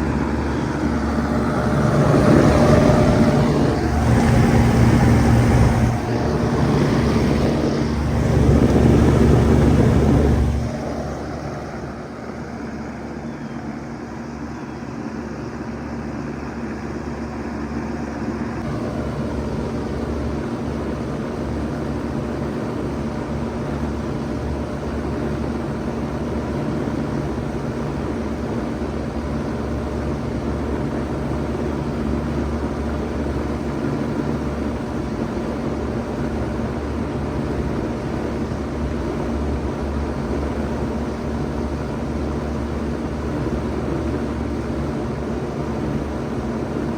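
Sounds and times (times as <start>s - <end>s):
fans rushing: 0.0s - 13.3s
heat pump compressor hum: 0.0s - 46.9s.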